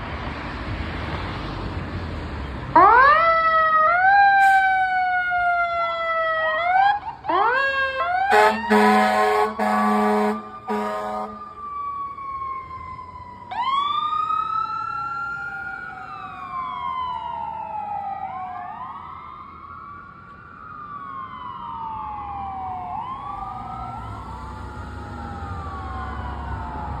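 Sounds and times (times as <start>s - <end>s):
sirens wailing: 2.7s - 27.0s
fire truck air horn honking: 4.4s - 4.9s, 8.2s - 11.7s.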